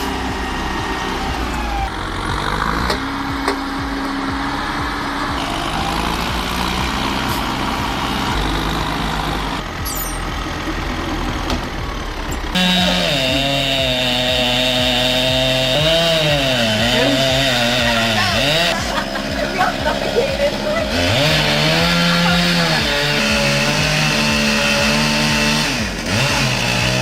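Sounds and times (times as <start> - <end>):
engine revving: 0.0 - 27.0
heavy truck engine running: 0.0 - 27.0.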